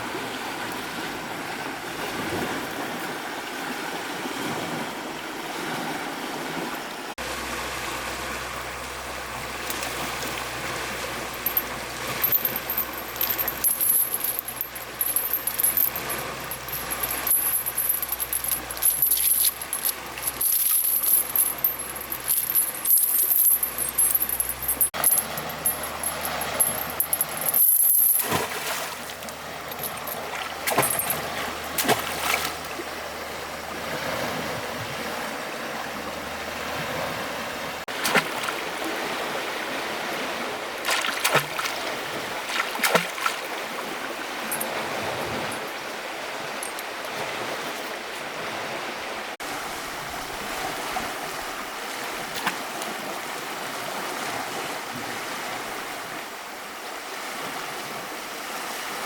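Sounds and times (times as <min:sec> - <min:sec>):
running water rushing: 0:04.8 - 0:54.6
short knocks and clinks: 0:11.2 - 0:32.6, 0:44.5 - 0:45.8.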